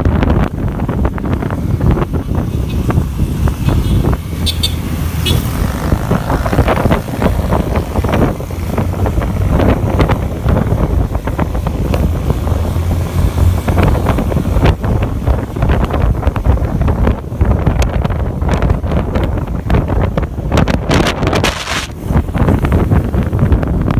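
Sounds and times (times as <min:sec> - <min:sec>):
motorcycle engine rumbling: 0:00.0 - 0:23.9
wind buffeting microphone: 0:00.0 - 0:23.9.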